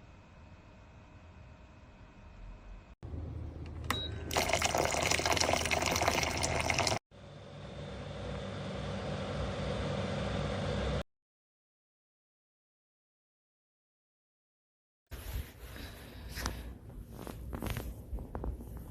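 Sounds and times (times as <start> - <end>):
water filling a container: 4.2 - 7.0.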